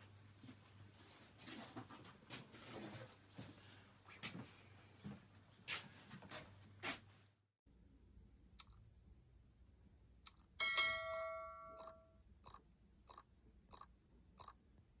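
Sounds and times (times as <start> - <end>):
evenly spaced clicks: 10.2 - 10.5, 11.8 - 14.6
ringing chime: 10.6 - 12.1.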